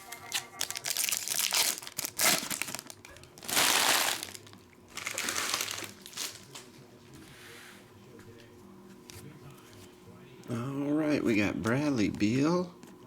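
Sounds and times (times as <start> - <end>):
foil wrappers crinkling: 0.0 - 6.8
packs torn open: 0.1 - 6.6.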